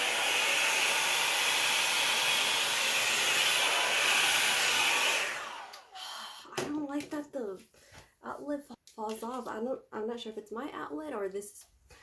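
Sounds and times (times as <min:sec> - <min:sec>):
hair dryer blowing: 0:00.0 - 0:06.0.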